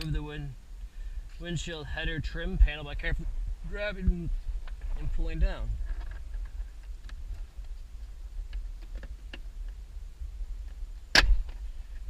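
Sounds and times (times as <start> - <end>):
retaining clip snapping: 11.1 - 11.6.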